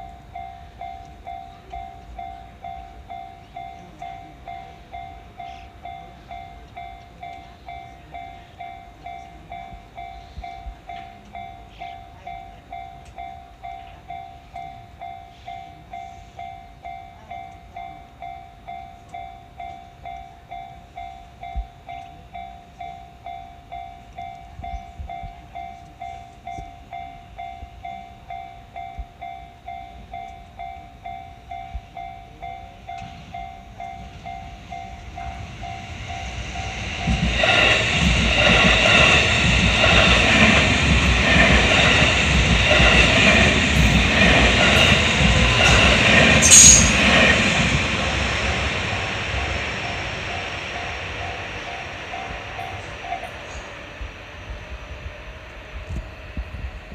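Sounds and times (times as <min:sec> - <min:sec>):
railroad crossing bell ringing: 0:00.0 - 0:54.0
train passing: 0:00.0 - 0:56.9
train wheel squeal: 0:32.9 - 0:56.6.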